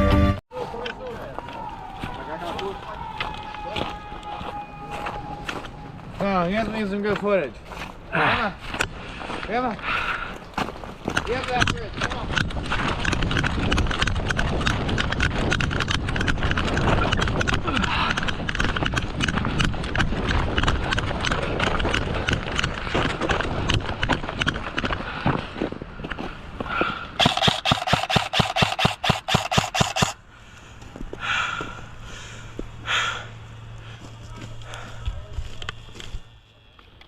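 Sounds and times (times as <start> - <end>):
running footsteps: 0.5 - 37.0
gear jostling against microphone: 10.8 - 25.0
airsoft gun rapid fire: 27.2 - 30.2.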